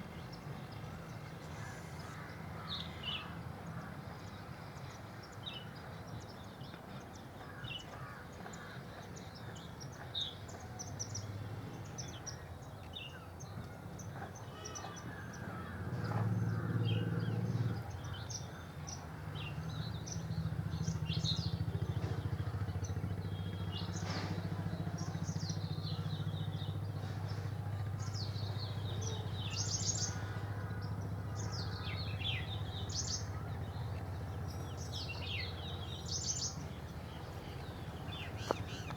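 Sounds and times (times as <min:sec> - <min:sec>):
small birds chirping and trilling: 0:00.0 - 0:38.9.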